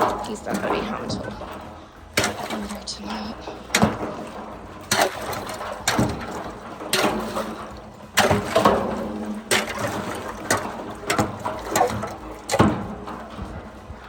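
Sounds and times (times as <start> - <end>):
hard knocks on ice: 0.0 - 3.0, 3.7 - 14.0
water sloshing: 0.0 - 14.0.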